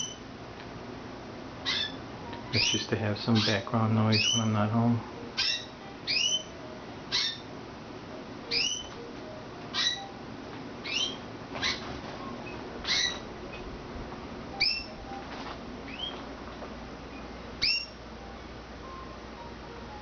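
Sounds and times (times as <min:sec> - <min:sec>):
canary call notes: 0:00.0 - 0:00.3, 0:01.6 - 0:02.0, 0:02.6 - 0:04.7, 0:05.3 - 0:07.5, 0:08.5 - 0:09.0, 0:09.7 - 0:10.2, 0:10.8 - 0:13.3, 0:14.6 - 0:15.0, 0:15.9 - 0:16.2, 0:17.6 - 0:18.0.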